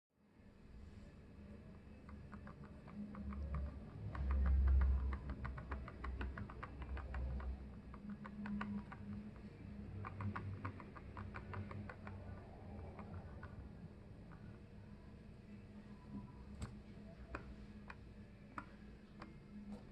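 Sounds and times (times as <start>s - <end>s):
fingers rubbing on lens: 2.0s - 14.6s.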